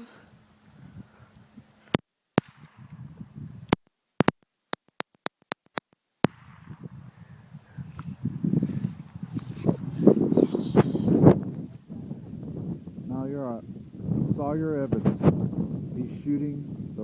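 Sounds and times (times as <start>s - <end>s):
pistol shots: 2.4s - 2.9s.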